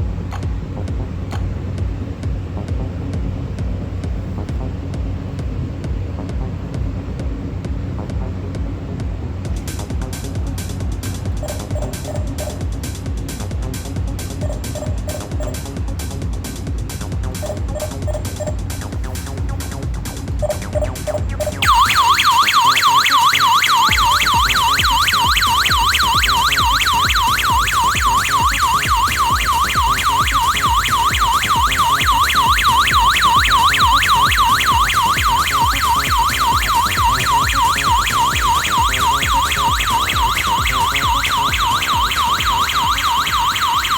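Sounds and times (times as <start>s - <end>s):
alarm siren warbling: 9.6s - 43.9s
short beeps: 11.4s - 12.6s, 14.4s - 15.6s, 17.4s - 18.6s, 20.4s - 22.8s.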